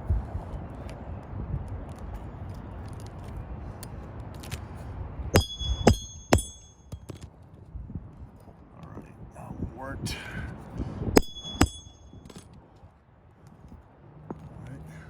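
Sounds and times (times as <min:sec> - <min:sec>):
hammer striking nail: 0:05.4 - 0:07.2, 0:11.2 - 0:12.4.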